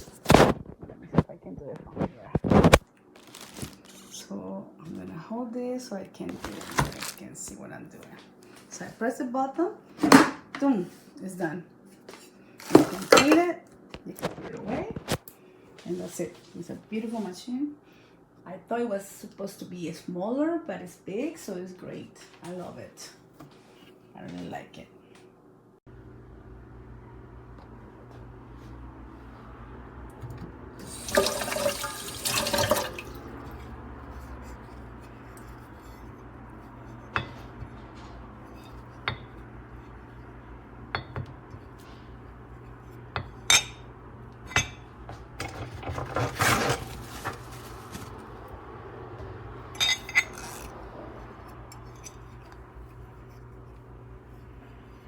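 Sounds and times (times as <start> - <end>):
low steady hum: 0.0 - 55.0
grinder parts clattering: 49.8 - 50.8.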